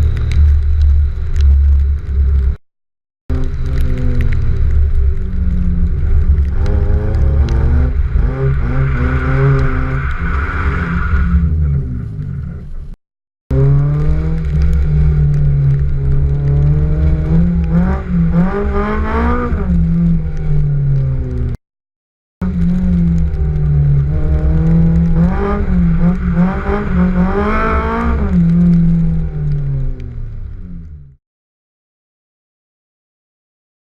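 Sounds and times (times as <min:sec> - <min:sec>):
car engine revving: 0:03.3 - 0:21.6, 0:22.4 - 0:31.0.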